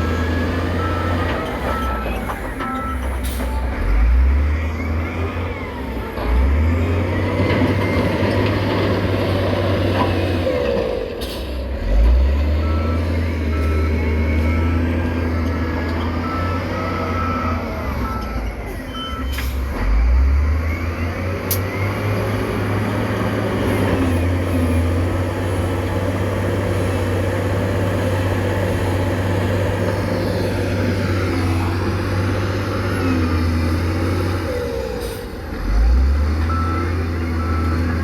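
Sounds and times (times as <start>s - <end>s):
reversing alarm beeping: 0.0s - 5.8s, 12.6s - 21.9s, 36.4s - 38.0s
diesel machinery engine revving: 0.0s - 38.0s.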